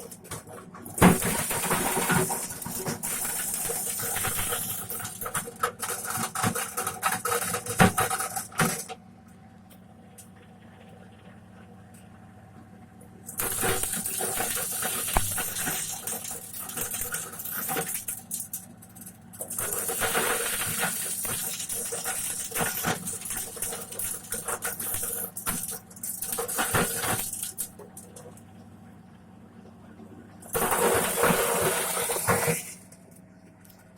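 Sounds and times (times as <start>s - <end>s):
corn sheller machine hum: 0.0s - 12.3s, 12.9s - 33.9s
corn kernels rattling against metal: 0.9s - 8.9s, 13.3s - 28.2s, 30.5s - 32.8s.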